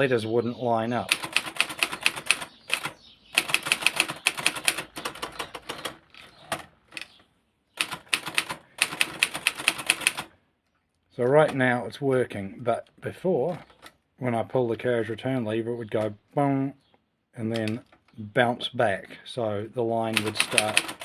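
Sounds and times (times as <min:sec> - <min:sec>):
typewriter keys clacking: 0:01.1 - 0:07.1, 0:07.8 - 0:10.3, 0:20.2 - 0:21.0.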